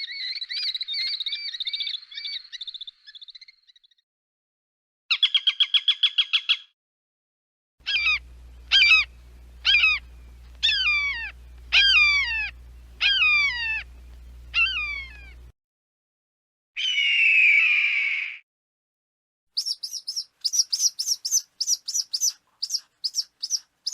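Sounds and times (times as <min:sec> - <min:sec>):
falcon harsh scream: 0:07.8 - 0:10.0, 0:10.6 - 0:13.9, 0:16.8 - 0:18.4
falcon cackling: 0:07.8 - 0:13.9, 0:14.5 - 0:15.5.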